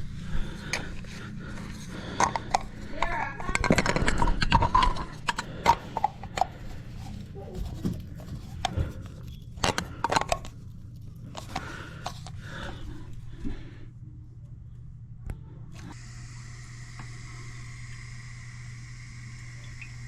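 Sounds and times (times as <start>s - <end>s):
steady low hum: 0.0s - 20.0s
scraping of parts and tools: 0.5s - 13.2s.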